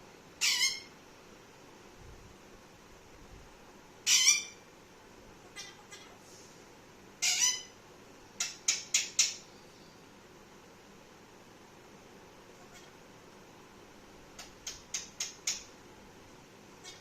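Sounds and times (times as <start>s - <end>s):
parrot squawking: 0.4s - 0.9s, 4.0s - 4.6s, 5.4s - 6.2s, 7.2s - 7.7s, 12.6s - 13.0s, 16.8s - 17.0s.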